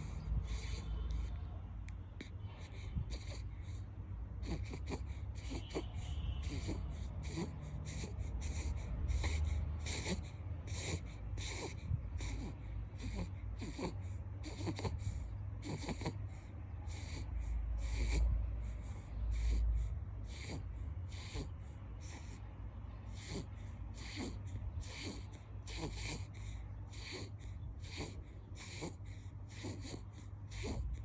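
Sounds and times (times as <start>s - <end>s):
steady low rumble: 0.0s - 15.6s
wheezy snoring breaths: 0.0s - 31.0s.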